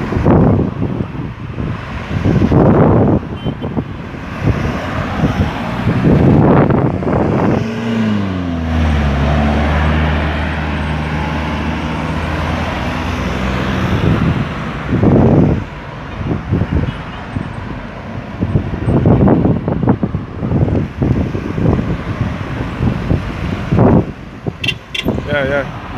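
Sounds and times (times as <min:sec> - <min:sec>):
road traffic: 0:00.0 - 0:25.9
wind buffeting microphone: 0:00.0 - 0:25.9.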